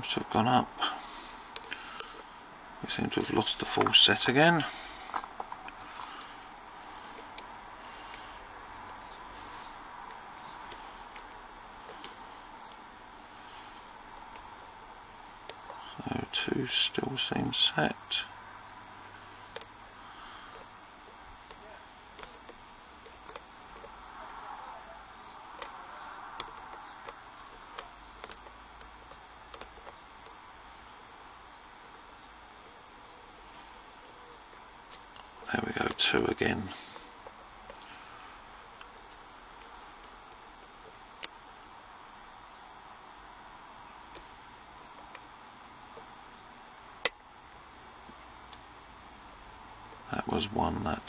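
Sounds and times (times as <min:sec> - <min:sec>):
faint steady hiss: 0:00.0 - 0:51.0
lock pick ticking and scraping: 0:05.4 - 0:12.8, 0:13.4 - 0:15.8, 0:19.4 - 0:24.4, 0:25.1 - 0:30.9.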